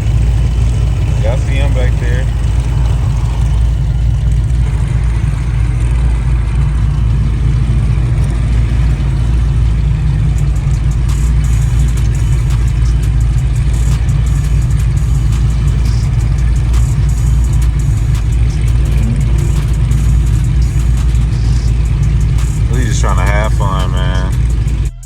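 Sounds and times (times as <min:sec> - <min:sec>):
car engine rumbling: 0:00.0 - 0:25.0.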